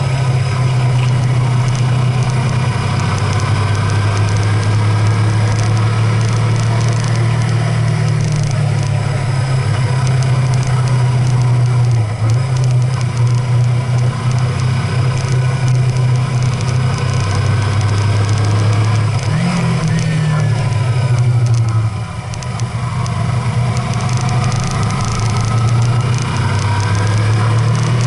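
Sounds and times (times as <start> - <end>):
road noise: 0.0 - 28.0
vehicle engine running: 0.0 - 28.0.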